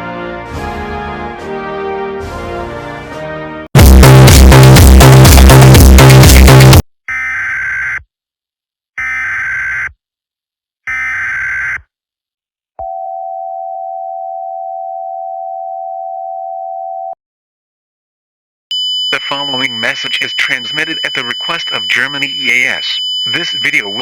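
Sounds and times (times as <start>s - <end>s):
loud electronic music: 3.8s - 6.8s
data header tones: 18.7s - 24.0s.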